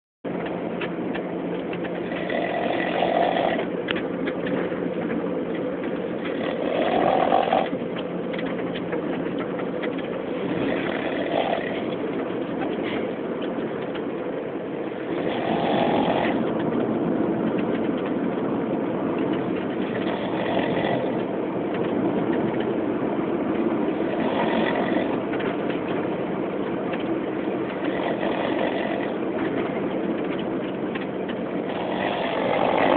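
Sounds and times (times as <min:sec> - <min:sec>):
steady background noise: 0:00.3 - 0:32.9
man snoring: 0:02.2 - 0:03.7, 0:06.4 - 0:07.7, 0:10.6 - 0:11.9, 0:15.1 - 0:16.4, 0:20.0 - 0:21.2, 0:24.1 - 0:25.1, 0:27.9 - 0:29.2, 0:31.7 - 0:32.9.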